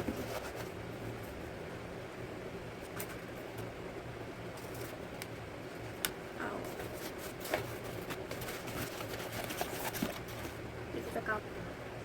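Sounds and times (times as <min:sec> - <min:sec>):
packaging rustling: 0:06.6 - 0:10.6.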